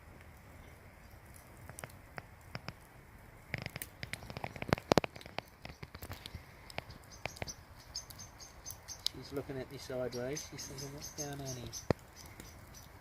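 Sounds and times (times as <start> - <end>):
birds pecking with sharp taps: 3.5 - 9.4, 10.1 - 13.0.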